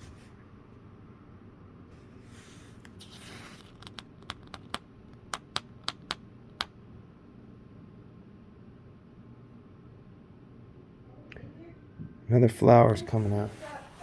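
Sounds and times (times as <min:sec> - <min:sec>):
plastic bricks clicking: 0:03.6 - 0:06.7.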